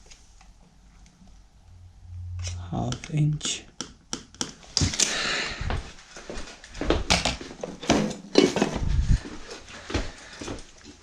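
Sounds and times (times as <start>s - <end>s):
small tools clattering: 7.1s - 8.8s.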